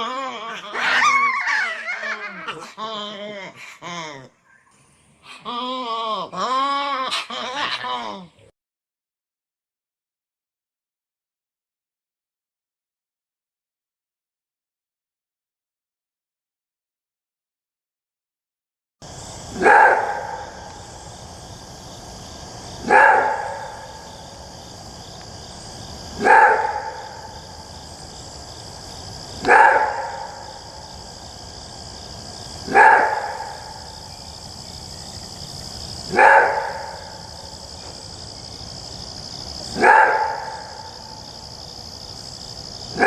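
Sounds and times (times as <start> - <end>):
animal bark-like call: 0.5 - 2.8, 19.5 - 20.8, 22.8 - 24.1, 26.2 - 27.5, 29.4 - 30.8, 32.6 - 34.0, 36.1 - 37.5, 39.7 - 41.2.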